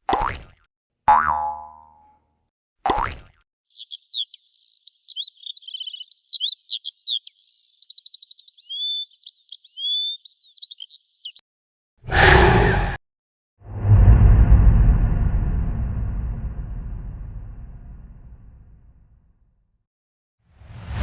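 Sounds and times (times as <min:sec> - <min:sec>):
songbird singing: 0:03.7 - 0:11.4
loud rushing burst of noise: 0:13.7 - 0:18.5.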